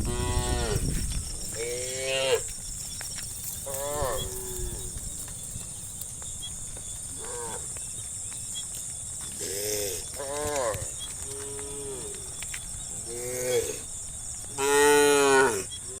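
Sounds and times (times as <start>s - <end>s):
cows mooing: 0.0s - 2.5s, 3.6s - 5.8s, 7.1s - 7.7s, 14.6s - 15.7s.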